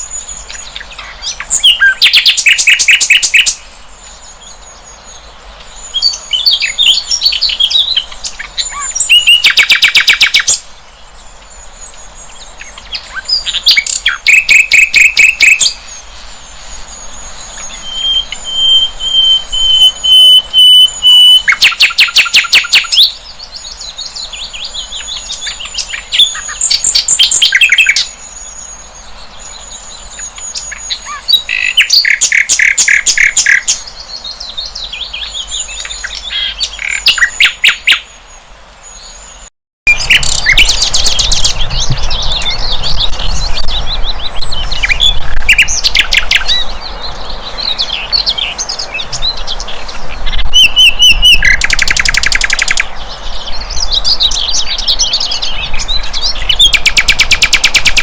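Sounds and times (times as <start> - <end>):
high bird twittering: 0.0 - 3.7, 5.6 - 10.6, 12.6 - 16.0, 16.9 - 23.2, 24.5 - 28.6, 30.1 - 33.9, 39.9 - 58.0
thin steady bird whistle: 5.9 - 10.5, 16.7 - 23.1, 50.5 - 52.8, 56.5 - 58.0.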